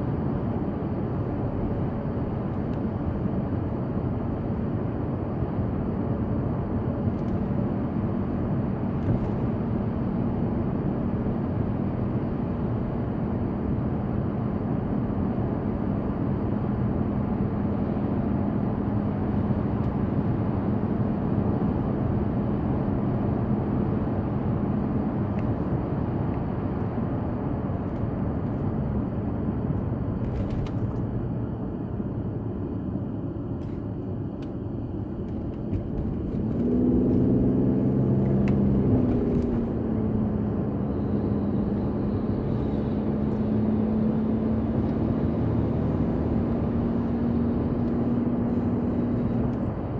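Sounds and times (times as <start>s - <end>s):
car cabin rumble: 0.1s - 13.0s, 23.4s - 49.9s.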